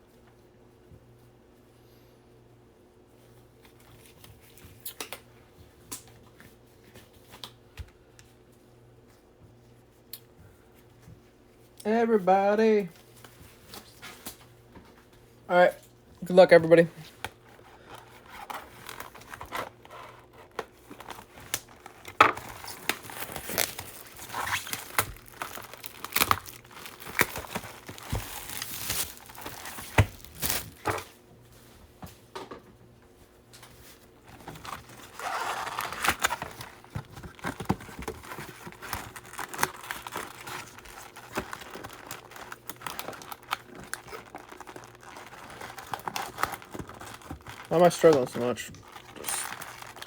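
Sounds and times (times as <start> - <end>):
plastic wrap crinkling: 17.1 - 31.1, 33.8 - 50.0
packaging tearing: 18.0 - 31.0, 34.3 - 50.0.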